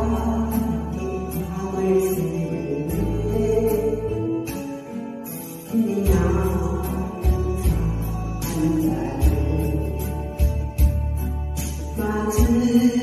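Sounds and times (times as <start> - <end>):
sustained bass notes: 6.0 - 13.0.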